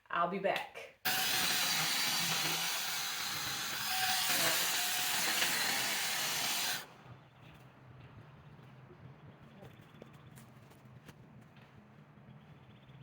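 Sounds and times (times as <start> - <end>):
mini chainsaw cutting branch: 1.1 - 6.9.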